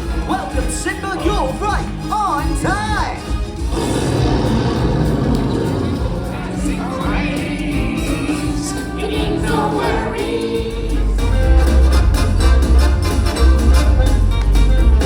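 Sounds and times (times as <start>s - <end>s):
choir singing with music: 0.0s - 15.0s
heavy bass: 0.0s - 15.0s.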